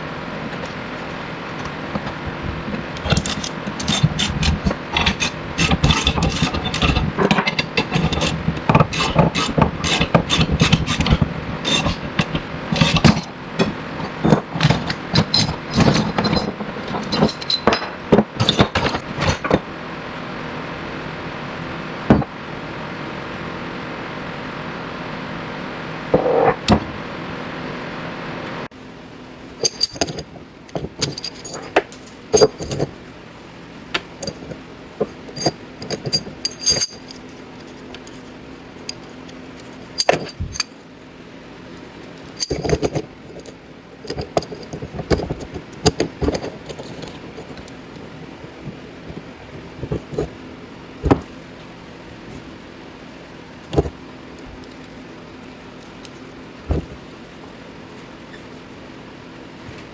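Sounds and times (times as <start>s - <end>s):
steady hiss and hum: 0.0s - 59.9s
metal tools clinking: 3.0s - 19.6s, 29.6s - 33.0s, 33.9s - 40.8s, 42.2s - 47.8s.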